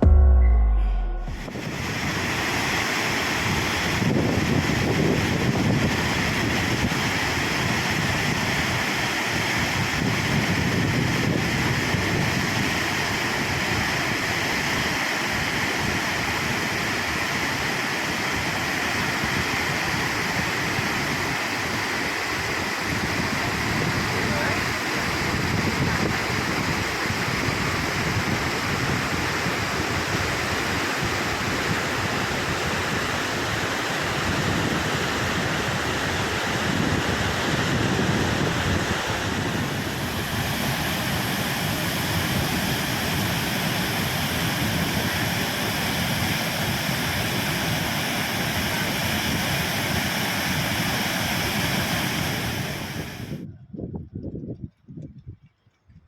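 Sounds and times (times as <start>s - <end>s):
waterfall rushing: 0.0s - 10.4s, 32.2s - 53.3s.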